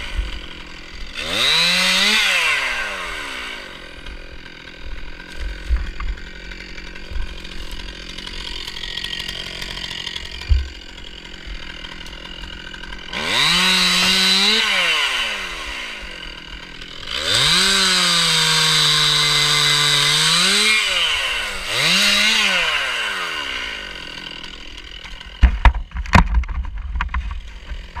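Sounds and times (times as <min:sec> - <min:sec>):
chainsaw idling and revving: 0:00.0 - 0:28.0
sharp knocks: 0:10.3 - 0:10.8.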